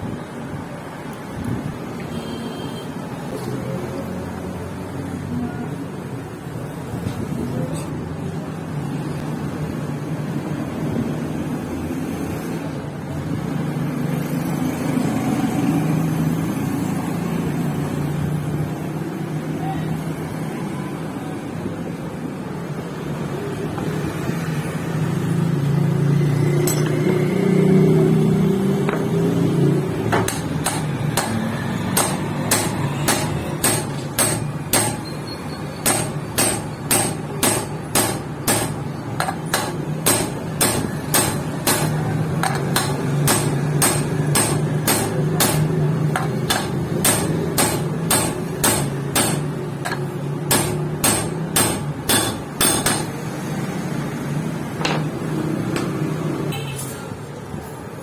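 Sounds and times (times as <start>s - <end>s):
hammer striking metal: 26.6s - 27.3s, 29.9s - 53.4s.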